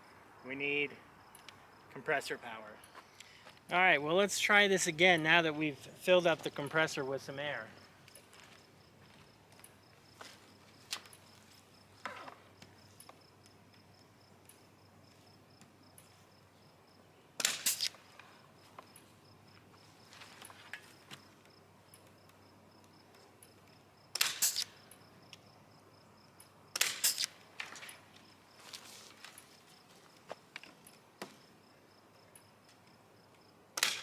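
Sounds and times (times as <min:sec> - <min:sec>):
pneumatic staple gun firing: 0:17.4 - 0:18.0, 0:24.1 - 0:24.8, 0:26.7 - 0:27.4, 0:33.8 - 0:34.0.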